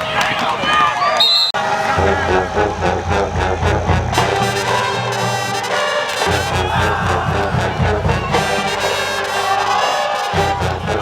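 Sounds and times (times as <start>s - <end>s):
brass horns music: 1.2s - 11.0s
steady low beat: 1.6s - 9.7s.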